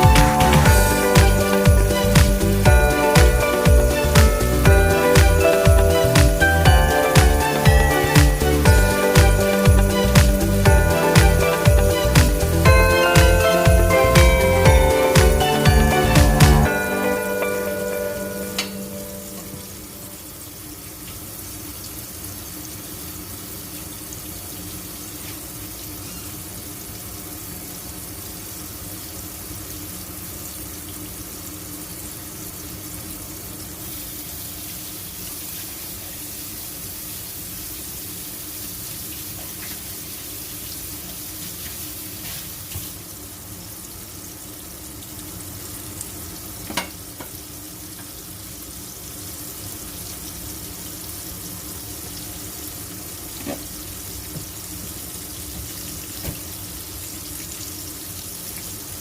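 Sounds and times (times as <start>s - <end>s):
food sizzling in a frying pan: 16.7s - 59.0s.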